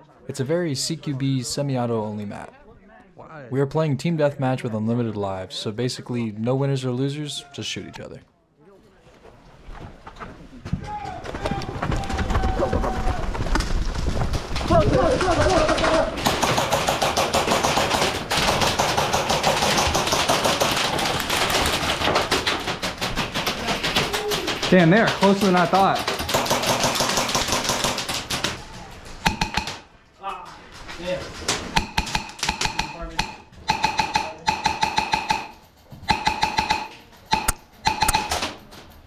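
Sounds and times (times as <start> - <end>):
airsoft guns firing: 14.6 - 28.6, 29.2 - 29.9, 31.8 - 38.5.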